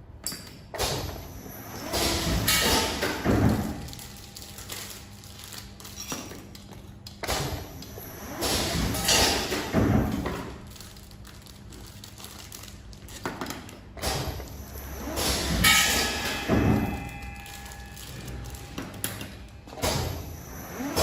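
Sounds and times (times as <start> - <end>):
packaging machine humming: 1.0 - 21.0
machine thuds and rattling: 1.9 - 4.0, 7.2 - 10.7, 13.3 - 21.0.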